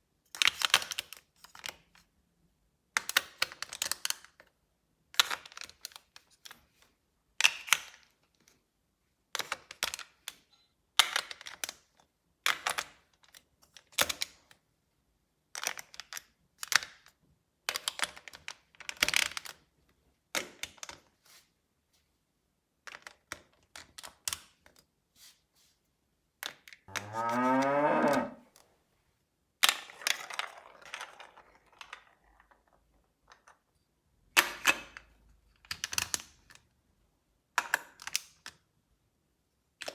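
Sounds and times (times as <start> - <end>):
cow mooing: 26.9 - 28.4
marbles clattering down plastic track: 29.8 - 32.8.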